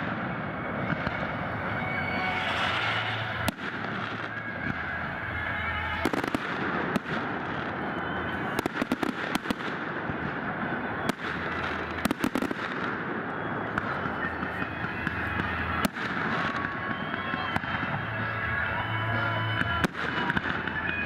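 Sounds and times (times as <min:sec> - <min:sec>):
fireworks bangs and crackles: 0:00.0 - 0:21.0
fireworks hiss: 0:01.0 - 0:04.4.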